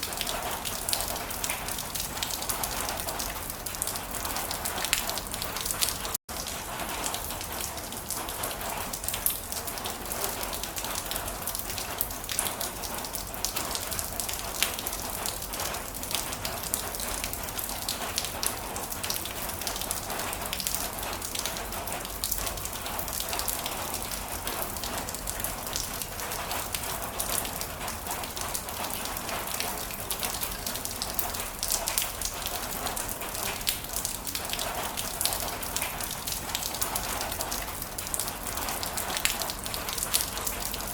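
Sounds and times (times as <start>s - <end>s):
heavy rain pattering: 0.0s - 40.9s.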